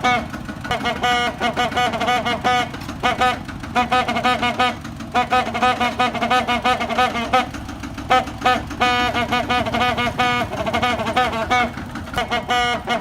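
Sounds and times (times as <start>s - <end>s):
tractor engine running: 0.0s - 13.0s
tractor horn blasts: 0.0s - 13.0s.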